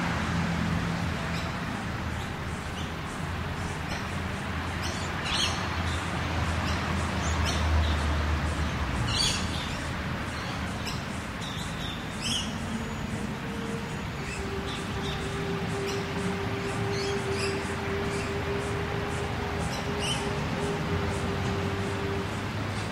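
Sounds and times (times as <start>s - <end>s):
car passing: 0.0s - 22.9s.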